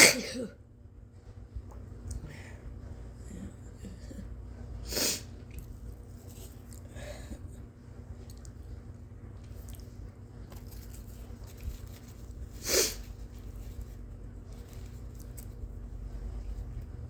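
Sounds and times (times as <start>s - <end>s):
woman sneezing: 0.0s - 0.6s
low steady hum: 0.0s - 17.0s.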